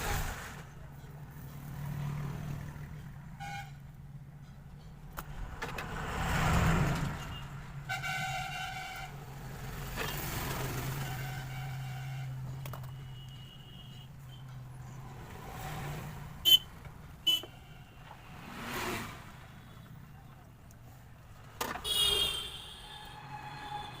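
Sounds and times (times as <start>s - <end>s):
vehicle horn toot: 16.4s - 17.8s, 21.8s - 23.2s.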